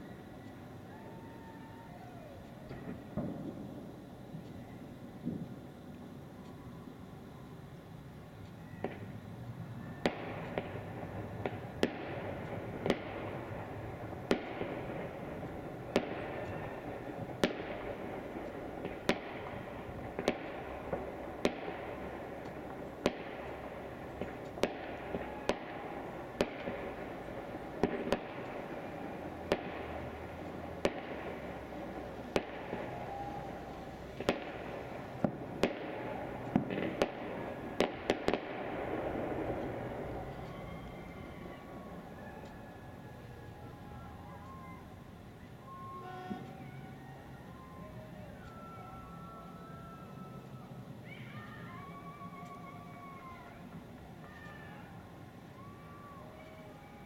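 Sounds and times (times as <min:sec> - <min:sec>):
steady background noise: 0:00.0 - 0:57.0
fireworks banging: 0:01.0 - 0:06.6, 0:10.0 - 0:43.0, 0:43.6 - 0:46.9.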